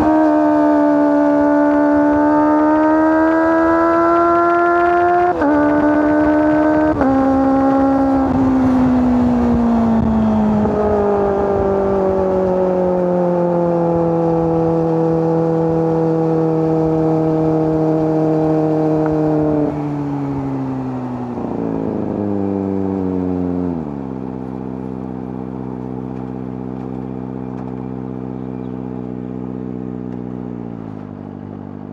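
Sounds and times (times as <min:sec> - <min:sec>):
motorcycle engine slowing to idle: 0:24.2 - 0:31.9.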